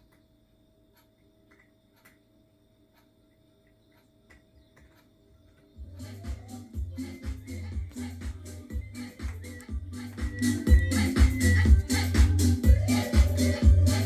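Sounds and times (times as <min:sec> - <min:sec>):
faint steady hum: 0:00.0 - 0:14.0
faint clicks: 0:00.9 - 0:02.3
electronic dance music: 0:05.8 - 0:14.0.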